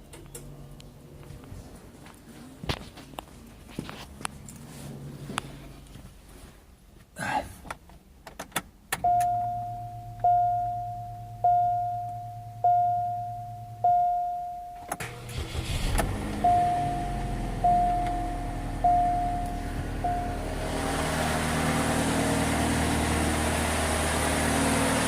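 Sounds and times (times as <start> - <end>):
car engine starting and running: 8.6 - 25.0
car warning chime dinging: 9.0 - 15.6, 16.2 - 20.6.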